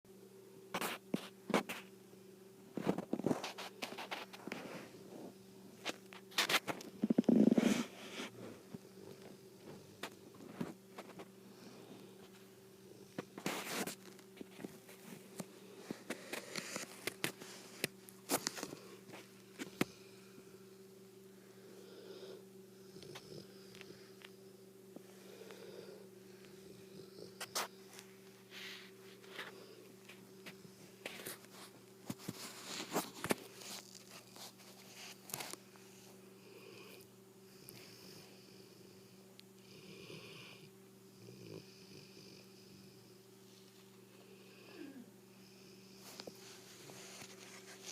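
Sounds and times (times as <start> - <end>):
dog snoring: 7.0 - 10.7, 21.6 - 24.1, 25.2 - 27.7, 39.6 - 43.1, 44.3 - 46.3
dog snoring softly: 21.6 - 24.4, 36.4 - 43.1, 44.2 - 47.8.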